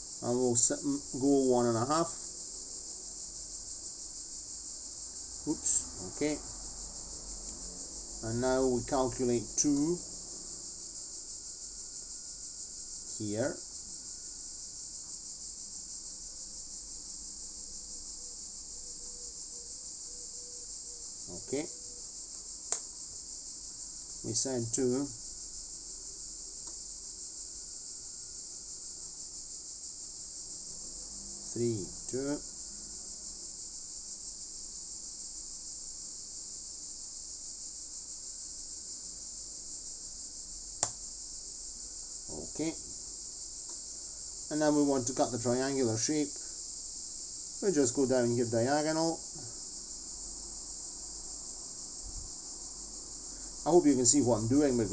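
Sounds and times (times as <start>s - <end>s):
high-pitched hiss: 0.0s - 54.9s
sharp click: 40.8s - 41.0s.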